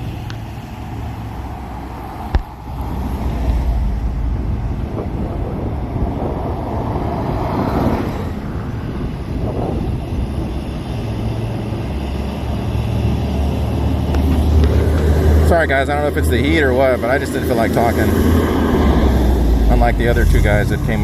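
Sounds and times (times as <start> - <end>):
wind on microphone: 0.0 - 15.4
vehicle engine: 0.0 - 21.0.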